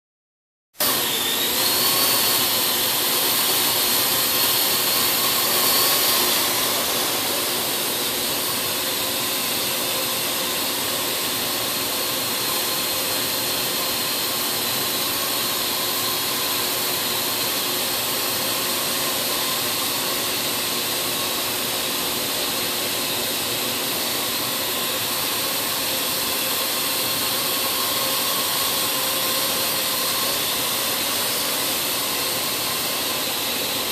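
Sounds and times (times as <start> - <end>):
drone propellers whining: 1.0 - 10.4.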